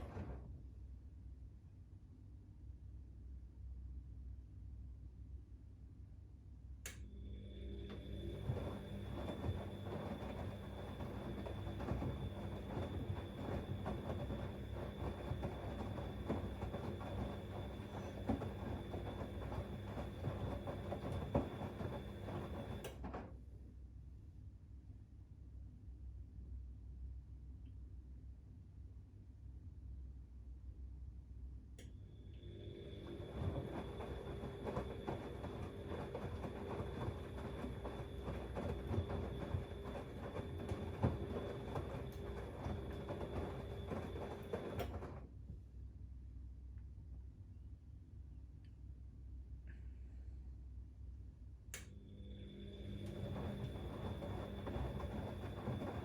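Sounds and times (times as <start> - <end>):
washing machine motor hum: 0.0 - 0.8, 7.0 - 23.6, 31.8 - 45.6, 51.8 - 56.0.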